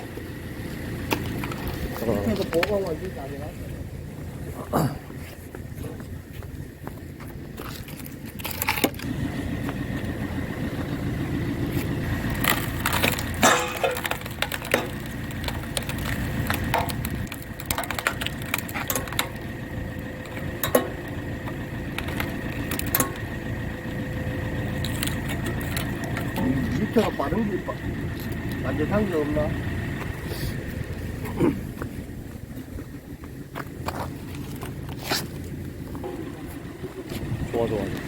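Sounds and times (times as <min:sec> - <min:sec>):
thin steady whine: 0:00.0 - 0:38.0
tractor engine and hydraulic hum: 0:00.0 - 0:38.0
wood cracking and splintering: 0:07.6 - 0:10.1, 0:11.6 - 0:27.4.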